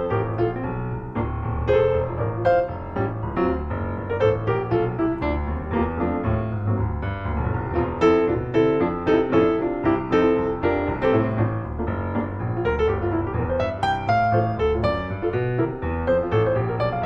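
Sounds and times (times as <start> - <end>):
solo piano melody: 0.0 - 17.0.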